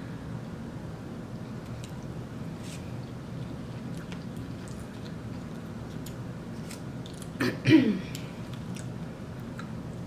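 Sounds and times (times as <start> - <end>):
chewing and smacking: 1.6 - 7.4, 8.1 - 10.0.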